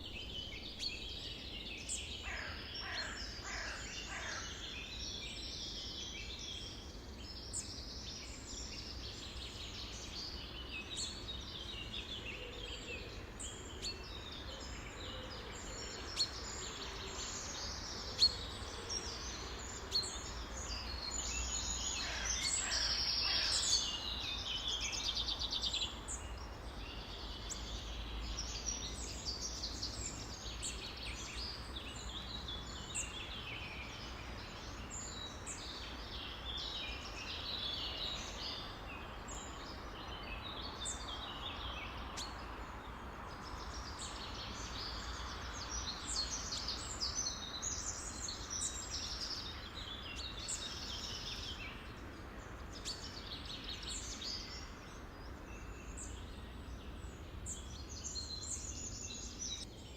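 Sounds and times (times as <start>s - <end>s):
songbirds chirping and whistling: 0.0s - 59.9s.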